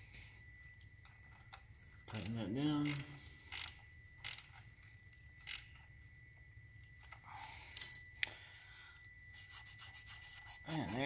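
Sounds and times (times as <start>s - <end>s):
hand ratchet clicking: 2.1s - 4.5s, 5.4s - 5.7s.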